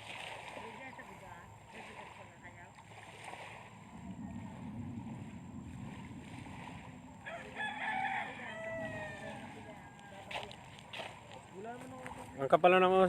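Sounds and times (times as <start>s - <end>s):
low background rumble: 2.6s - 11.6s
rooster crowing: 7.1s - 10.7s.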